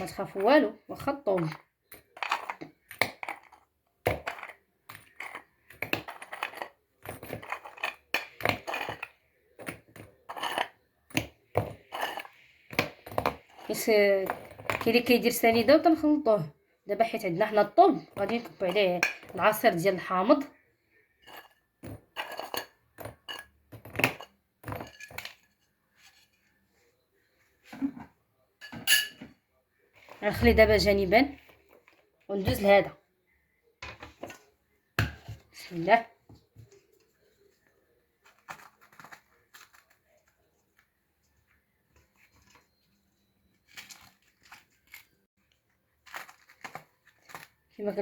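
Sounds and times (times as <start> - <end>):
dishes and utensils clinking: 21.2 - 25.6, 27.8 - 29.4.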